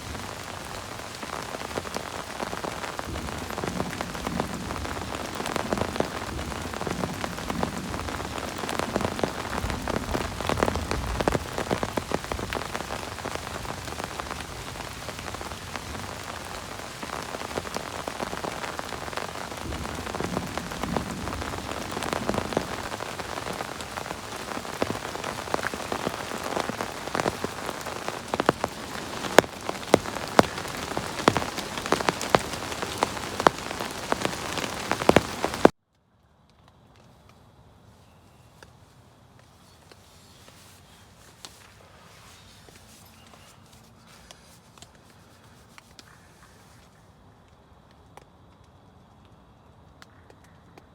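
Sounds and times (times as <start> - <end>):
heavy rain falling: 0.0 - 35.8
sharp raindrop strikes: 0.0 - 35.8.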